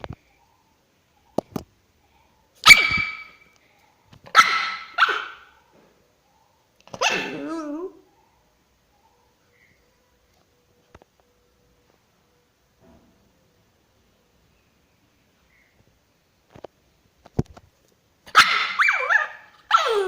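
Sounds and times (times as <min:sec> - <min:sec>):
dog barking: 0:02.6 - 0:03.4, 0:04.3 - 0:05.7, 0:06.3 - 0:09.4, 0:18.3 - 0:20.0
dog crying with wavering pitch: 0:07.0 - 0:08.1, 0:18.3 - 0:20.0.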